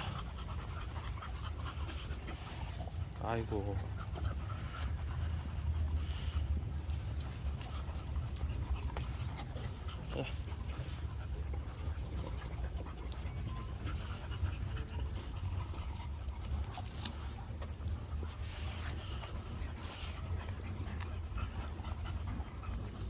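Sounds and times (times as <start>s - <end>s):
dog panting: 0.0s - 23.0s
steady low rumble: 3.8s - 23.0s.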